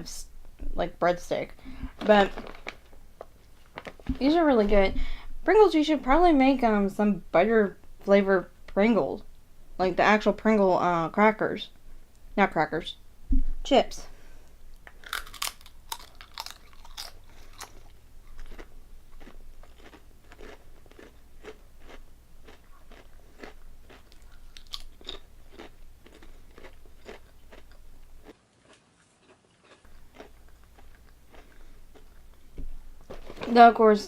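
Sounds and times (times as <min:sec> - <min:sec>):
potato chips crunching: 0:14.8 - 0:32.4.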